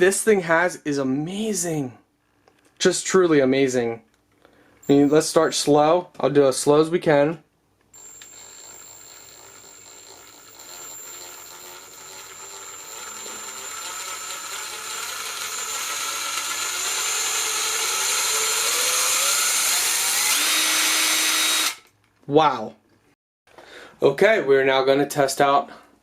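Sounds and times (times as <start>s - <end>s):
impact driver motor revving up: 8.0s - 21.8s.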